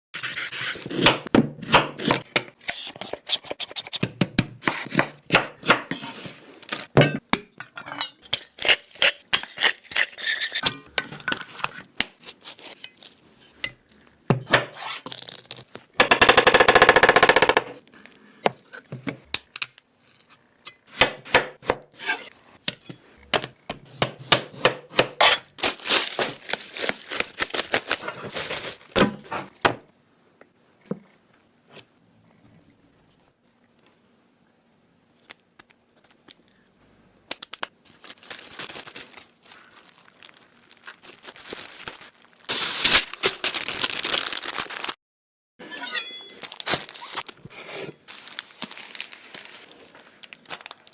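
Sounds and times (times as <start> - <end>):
utensils clattering: 10.2 - 11.9
knife chopping on cutting board: 22.7 - 25.4.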